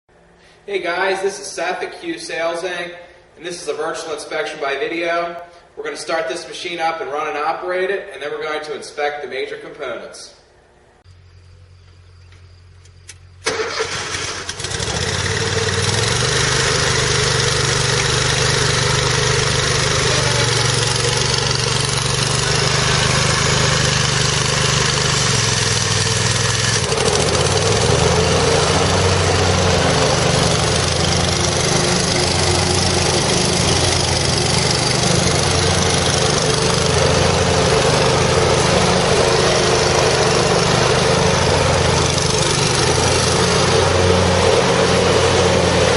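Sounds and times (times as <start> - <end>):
mower engine cranking and running: 12.8 - 45.9.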